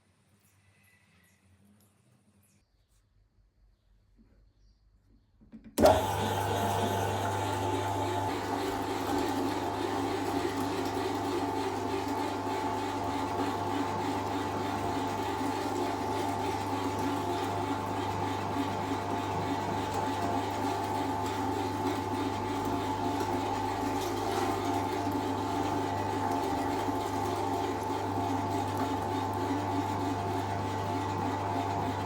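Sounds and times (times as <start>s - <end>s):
meat grinder motor humming: 5.8s - 32.0s.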